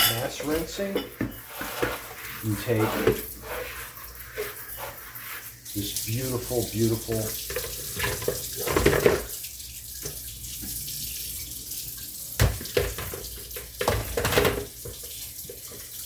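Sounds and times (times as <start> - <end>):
dishes knocking and clattering: 0.0 - 2.3, 7.5 - 9.3, 12.4 - 15.8
tap water running into sink: 0.3 - 16.0.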